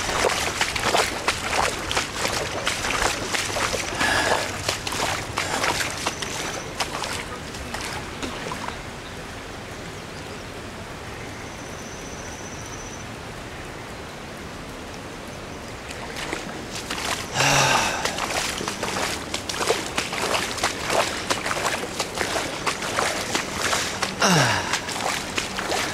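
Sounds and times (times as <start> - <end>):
floodwater rushing: 0.0 - 9.8, 15.6 - 25.9.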